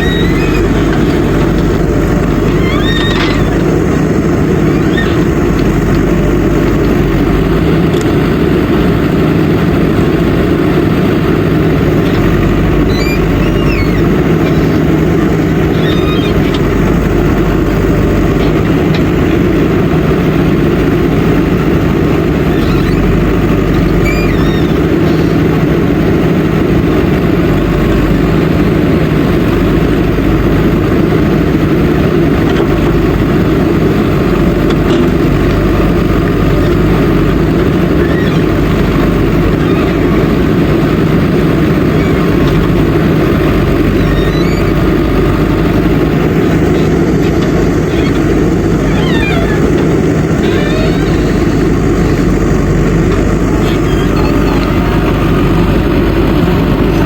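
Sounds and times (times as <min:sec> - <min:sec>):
diesel engine running: 0:00.0 - 0:57.0.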